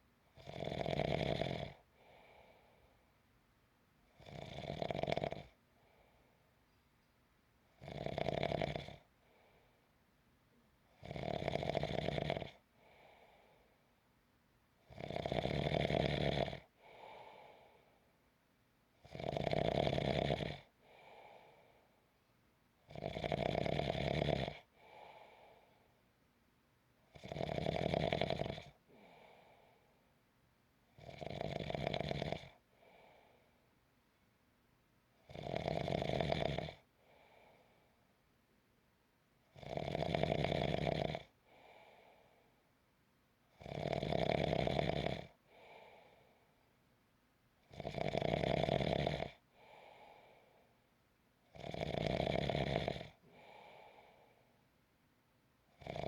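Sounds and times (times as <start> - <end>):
loud snoring: 0.4 - 1.8, 4.2 - 5.6, 7.8 - 9.1, 11.0 - 12.6, 14.9 - 17.1, 19.0 - 20.7, 22.9 - 25.2, 27.1 - 29.3, 31.0 - 33.0, 35.2 - 36.9, 39.5 - 41.4, 43.6 - 45.7, 47.7 - 49.7, 51.5 - 54.0, 55.7 - 56.0
faint breath: 1.8 - 3.2, 5.6 - 7.2, 9.0 - 10.0, 12.6 - 14.1, 16.7 - 18.3, 20.7 - 22.3, 24.7 - 26.2, 28.8 - 30.2, 32.6 - 33.8, 36.9 - 38.2, 41.4 - 42.7, 45.4 - 46.8, 49.4 - 50.9, 53.2 - 54.8.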